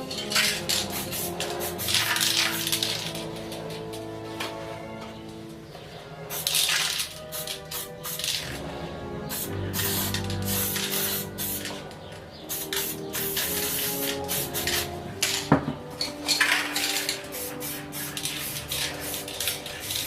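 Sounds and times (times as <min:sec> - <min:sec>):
spray paint hissing: 0:00.0 - 0:03.3, 0:06.3 - 0:08.6, 0:09.3 - 0:11.8, 0:12.4 - 0:15.5, 0:16.4 - 0:20.0
hard objects clinking: 0:00.0 - 0:03.9, 0:14.1 - 0:17.3
background music: 0:00.0 - 0:20.0.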